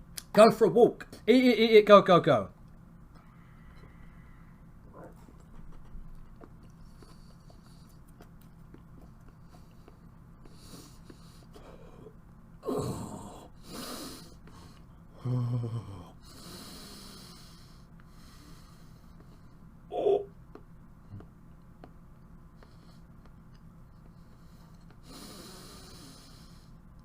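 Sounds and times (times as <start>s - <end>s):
man breathing hard: 9.5s - 12.2s, 13.2s - 19.6s, 24.0s - 26.8s
man groaning: 12.6s - 13.6s, 15.1s - 16.2s, 19.9s - 20.3s.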